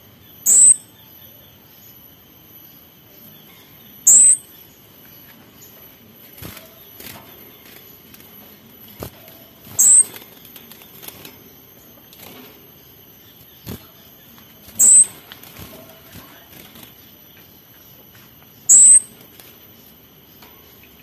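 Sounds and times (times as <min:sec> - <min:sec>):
thrush high sharp calls: 0:09.8 - 0:10.1, 0:14.7 - 0:15.2, 0:18.7 - 0:19.1.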